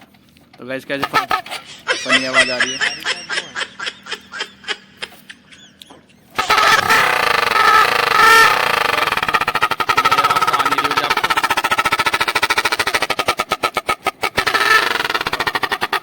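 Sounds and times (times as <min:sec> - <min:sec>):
motorcycle exhaust putting: 0:00.0 - 0:16.0
honking horn tone: 0:06.4 - 0:10.2.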